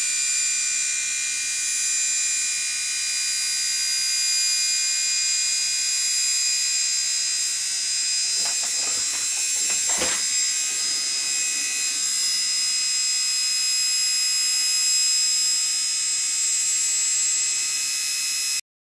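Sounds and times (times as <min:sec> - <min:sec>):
washing machine motor whine: 0:07.5 - 0:13.8
knock or rattle: 0:08.2 - 0:11.0.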